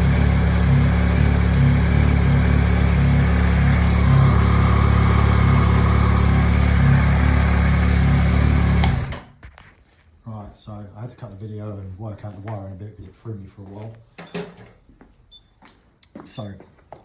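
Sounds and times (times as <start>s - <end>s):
motorcycle engine idling: 0.0s - 9.1s.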